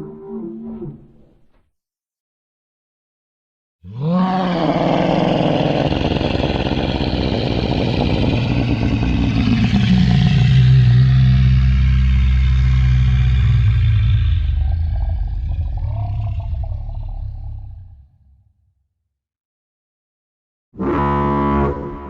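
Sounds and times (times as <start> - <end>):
low animal bellow: 0.0 - 1.2, 3.8 - 18.4.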